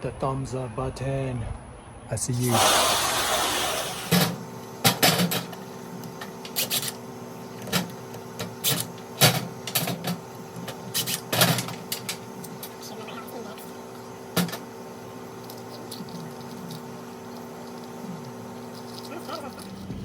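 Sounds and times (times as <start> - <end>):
steady hum: 0.0 - 20.0
short hiss: 2.4 - 4.2.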